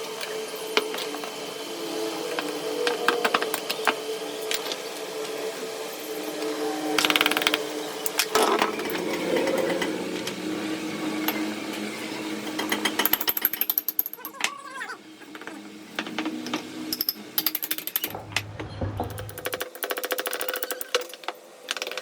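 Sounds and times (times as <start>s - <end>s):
steady hum: 18.0s - 19.7s.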